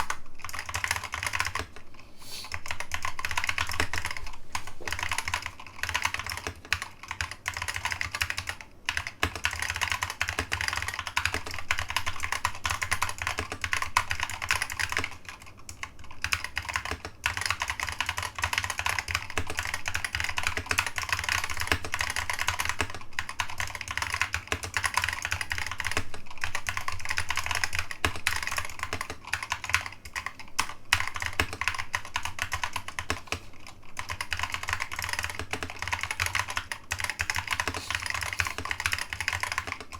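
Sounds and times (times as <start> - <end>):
fast typing on mechanical keyboard: 0.0 - 1.9, 2.5 - 39.9
steady low hum: 0.0 - 8.0.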